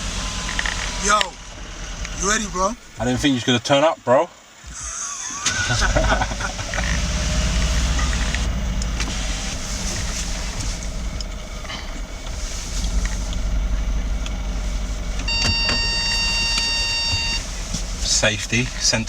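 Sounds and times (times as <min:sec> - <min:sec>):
car engine running: 0:00.0 - 0:19.0
steady electronic warning tone: 0:13.4 - 0:17.6.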